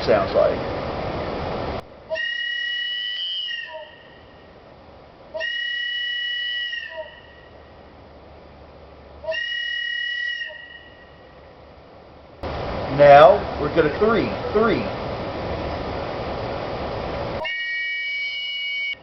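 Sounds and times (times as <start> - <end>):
wooden train whistle blasts: 2.1 - 4.4, 5.4 - 7.6, 9.2 - 11.3, 17.4 - 19.0.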